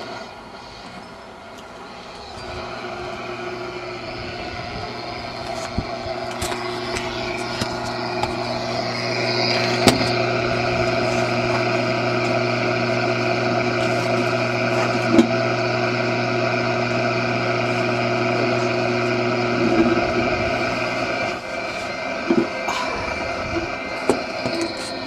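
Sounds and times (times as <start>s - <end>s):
radio static hiss: 0.0s - 15.3s
droning radio tones: 0.0s - 25.0s.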